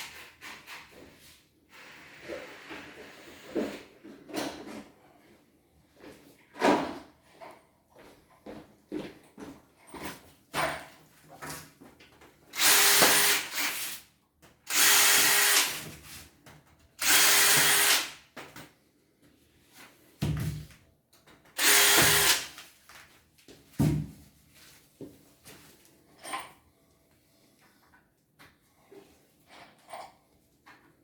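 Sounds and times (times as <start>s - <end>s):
electric drill whining: 12.6s - 13.9s, 14.7s - 15.9s, 17.0s - 18.2s, 21.6s - 22.6s.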